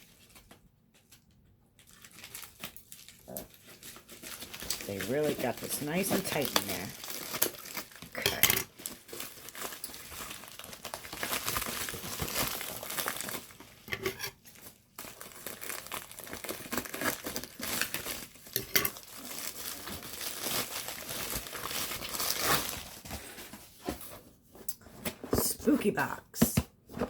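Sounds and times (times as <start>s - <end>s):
packaging crinkling and rustling: 0.0s - 24.2s
packaging tearing: 1.8s - 23.0s.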